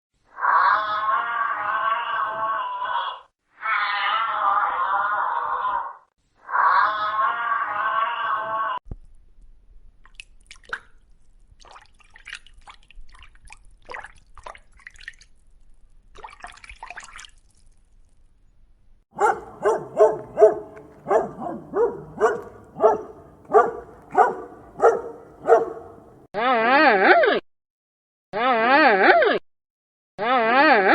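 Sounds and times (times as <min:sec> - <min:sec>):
water dripping and splashing: 0:10.0 - 0:18.1, 0:19.4 - 0:26.1
dog barking: 0:19.2 - 0:26.3.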